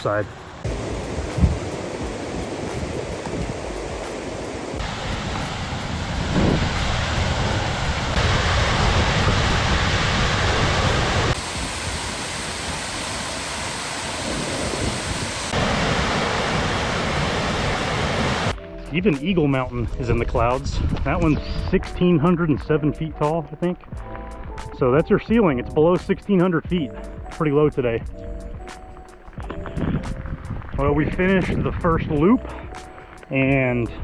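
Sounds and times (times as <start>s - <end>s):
rushing floodwater and waterfalls: 0.0s - 22.2s
wind on microphone: 0.6s - 18.6s, 19.5s - 22.7s, 29.4s - 32.8s.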